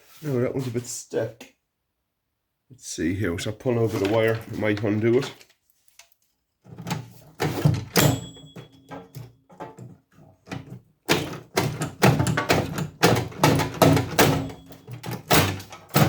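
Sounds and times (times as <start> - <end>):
metallic knocks and clanks: 6.8 - 16.0.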